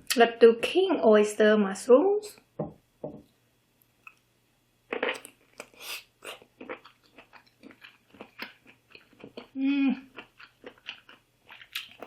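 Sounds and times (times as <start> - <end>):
chewing close to microphone: 5.0 - 12.0.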